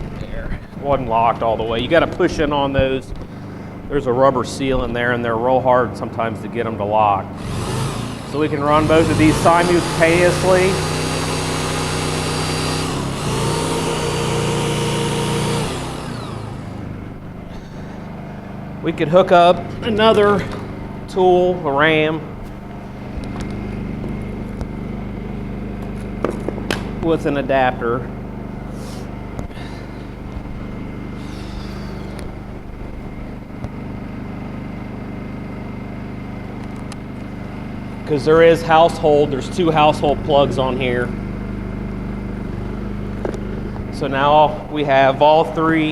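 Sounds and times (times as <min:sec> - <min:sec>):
portable generator running: 0:00.0 - 0:45.9
hydraulic tool motor whining: 0:07.3 - 0:18.8, 0:28.5 - 0:34.0, 0:36.5 - 0:45.9.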